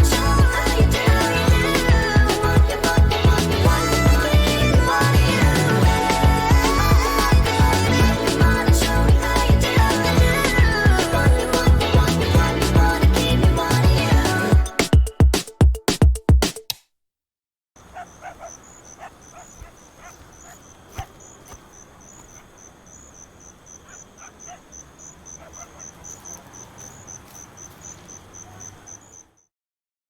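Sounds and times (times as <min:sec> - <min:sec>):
song music: 0:00.0 - 0:16.6
cricket chirping: 0:17.8 - 0:29.5.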